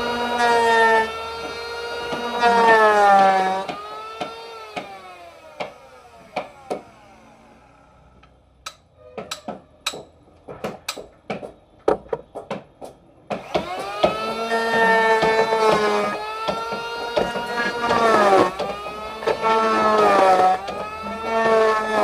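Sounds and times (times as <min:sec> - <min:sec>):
power tool motor whine: 0:00.0 - 0:08.2, 0:13.4 - 0:22.0
sharp knocks on wood: 0:09.2 - 0:14.3.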